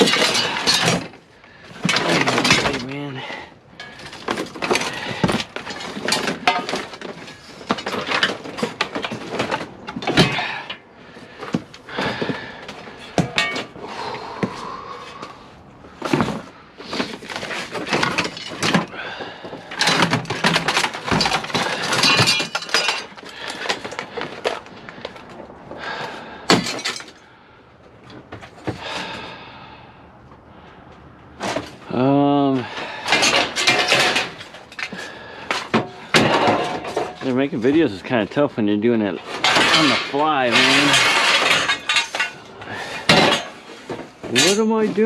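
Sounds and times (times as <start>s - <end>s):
scrap metal clanking: 0.0s - 14.1s, 15.9s - 25.3s, 32.6s - 38.2s, 39.0s - 45.0s.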